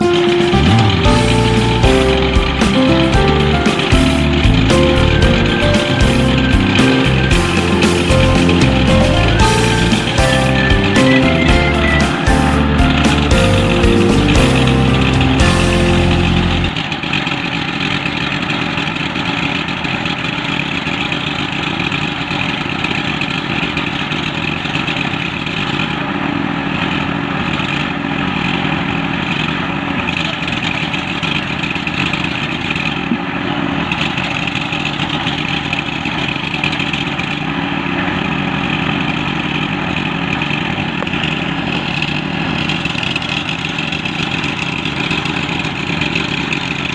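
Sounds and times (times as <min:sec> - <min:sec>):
concrete mixer engine running: 0:00.0 - 0:46.9.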